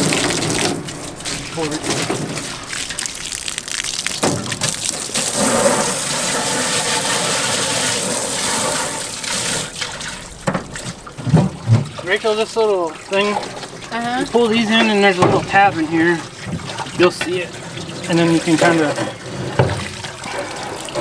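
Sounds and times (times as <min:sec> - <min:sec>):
garden hose spraying water: 0:00.0 - 0:10.2, 0:12.0 - 0:16.4, 0:17.0 - 0:19.2
knocks: 0:14.8 - 0:15.8.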